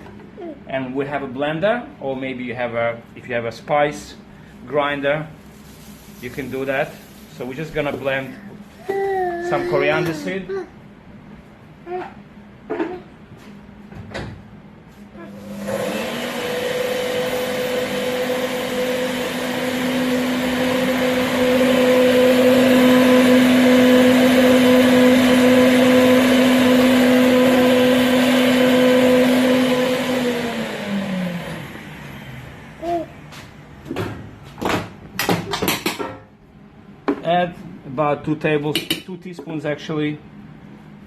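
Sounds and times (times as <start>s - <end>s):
blender motor grinding seeds: 15.3s - 32.1s.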